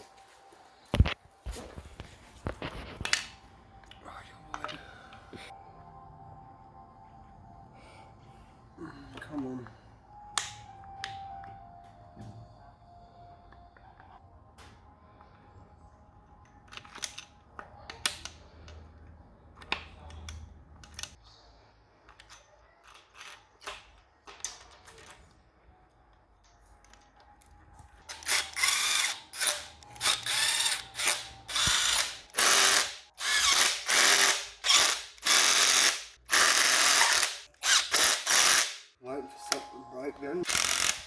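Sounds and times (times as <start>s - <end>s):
ratchet wrench ratcheting: 28.1s - 38.9s, 40.5s - 41.0s.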